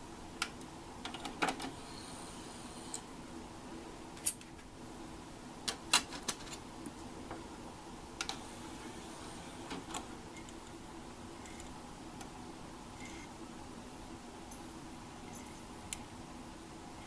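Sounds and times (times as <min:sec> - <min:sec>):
faint steady hum: 0:00.0 - 0:17.0
clicks and knocks of small hard parts: 0:05.7 - 0:06.6.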